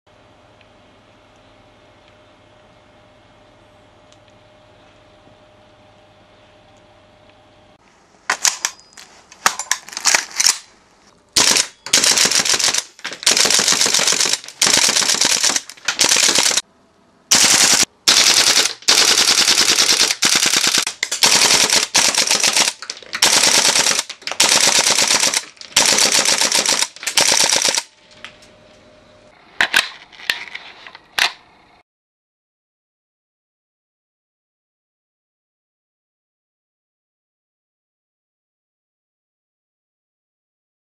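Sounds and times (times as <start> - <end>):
airsoft gun full-auto bursts: 11.4 - 16.6, 17.3 - 27.9
sharp clicks: 11.4 - 16.6, 17.3 - 28.4.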